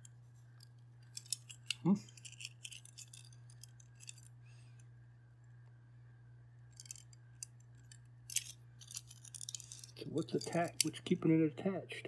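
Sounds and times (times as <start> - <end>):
steady low hum: 0.0 - 12.0
small metal parts clicking: 0.5 - 4.4, 6.7 - 11.0.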